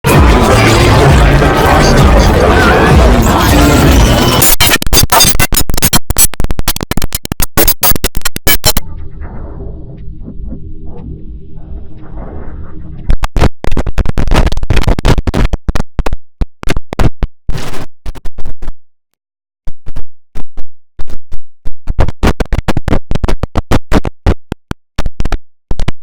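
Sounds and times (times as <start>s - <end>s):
distorted low drone: 0.0s - 16.0s
rapid stuttering bursts: 0.1s - 16.1s.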